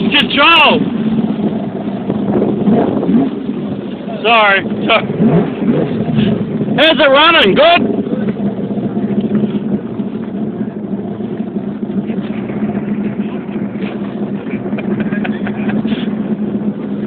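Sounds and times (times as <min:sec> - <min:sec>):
boat engine humming: 0:00.0 - 0:17.0
water noise: 0:00.0 - 0:17.0
wind noise: 0:00.0 - 0:17.0.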